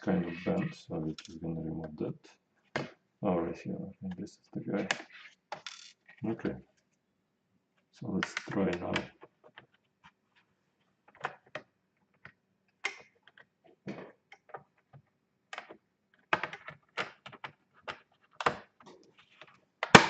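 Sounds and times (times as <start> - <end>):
small plastic clicks and taps: 11.1 - 20.0.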